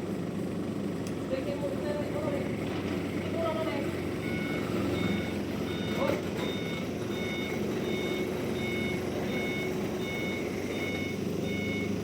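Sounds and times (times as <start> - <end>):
engine running: 0.0 - 12.0
reversing alarm beeps: 4.2 - 12.0.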